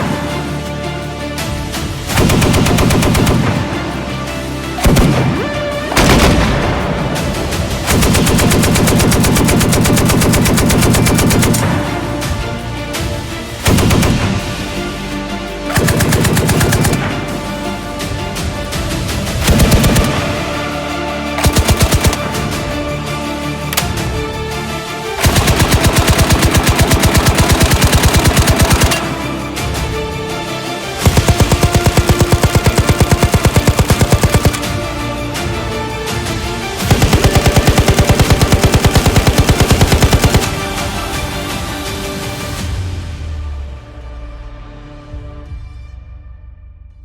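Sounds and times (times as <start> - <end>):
background music: 0.0 - 47.0
suppressed machine gun firing: 2.1 - 3.7, 4.8 - 6.7, 7.9 - 11.8, 13.7 - 14.6, 15.7 - 17.2, 19.5 - 20.4, 21.4 - 22.5, 25.2 - 29.2, 31.0 - 34.8, 36.8 - 40.6.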